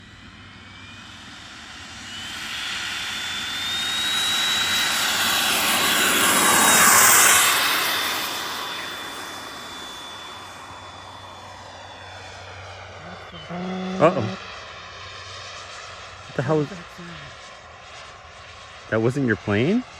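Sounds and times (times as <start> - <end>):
turbine high whine: 0.0 - 19.9
rushing jet sound: 2.0 - 11.6.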